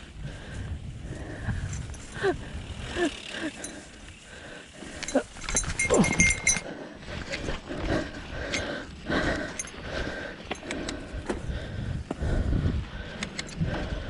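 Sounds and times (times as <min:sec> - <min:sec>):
wind: 0:00.0 - 0:14.0
bicycle rattling and clinking: 0:01.2 - 0:11.6.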